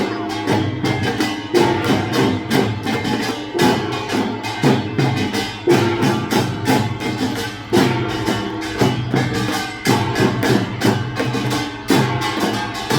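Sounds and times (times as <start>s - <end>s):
drum strikes: 0.0s - 12.9s.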